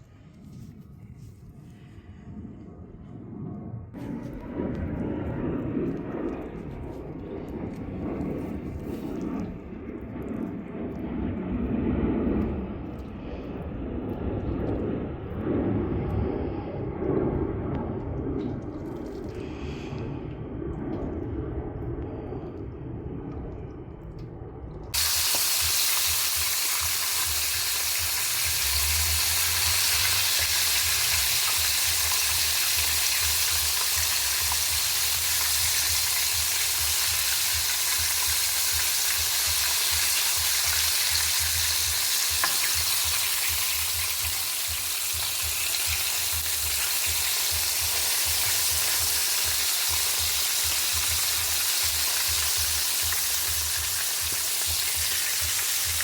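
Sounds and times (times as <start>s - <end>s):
food sizzling in hot oil: 25.0s - 56.0s.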